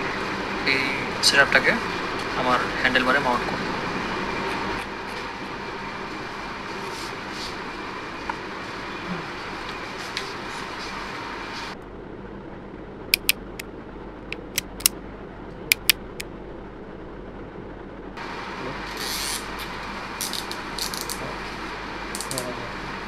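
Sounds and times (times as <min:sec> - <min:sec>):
steady background noise: 0:00.0 - 0:23.0
cable ties clicking tight: 0:13.2 - 0:13.6, 0:14.4 - 0:14.9, 0:15.7 - 0:16.0.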